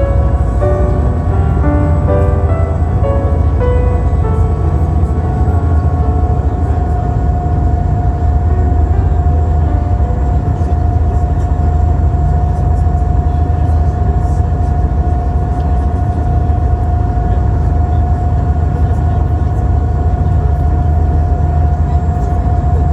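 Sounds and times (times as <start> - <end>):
constant whine: 0.0 - 12.6
vehicle engine drone: 0.0 - 12.6.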